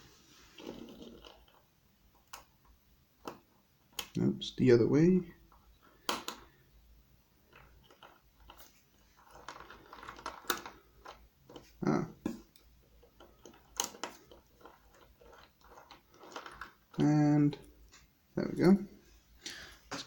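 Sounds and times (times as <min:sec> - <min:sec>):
small metal clicks and scrapes: 0:12.5 - 0:18.0.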